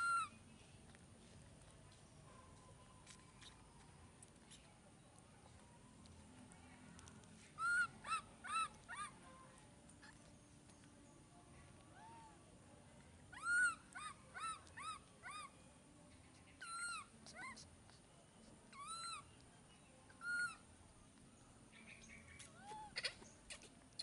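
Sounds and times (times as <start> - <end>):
baby monkey squeaky calls: 0.0 - 0.4, 7.6 - 9.2, 13.3 - 15.6, 16.5 - 17.7, 18.7 - 19.3, 20.1 - 20.6, 21.8 - 24.0.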